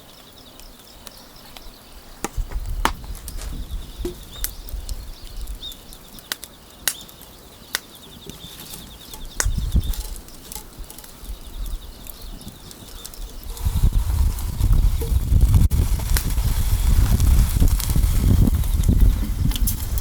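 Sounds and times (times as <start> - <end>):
wood fire crackling: 0.0 - 20.0
low fluttering rumbles: 13.3 - 20.0.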